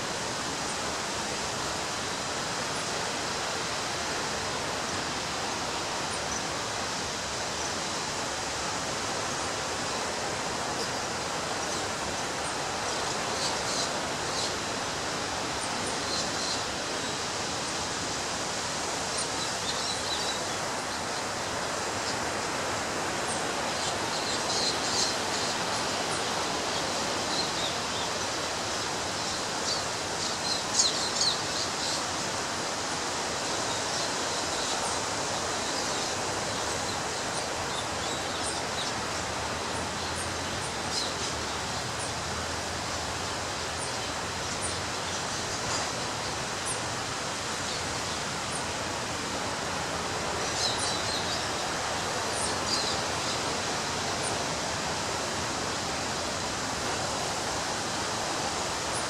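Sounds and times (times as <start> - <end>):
ocean surf on a beach: 0.0 - 59.0.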